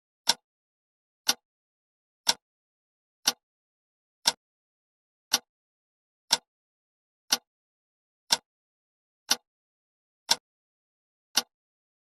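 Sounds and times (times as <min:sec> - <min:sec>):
clock ticking: 0:00.2 - 0:00.4, 0:01.2 - 0:01.4, 0:02.2 - 0:02.4, 0:03.2 - 0:03.4, 0:04.2 - 0:04.4, 0:05.3 - 0:05.5, 0:06.3 - 0:06.5, 0:07.3 - 0:07.5, 0:08.3 - 0:08.5, 0:09.3 - 0:09.5, 0:10.3 - 0:10.5, 0:11.3 - 0:11.6.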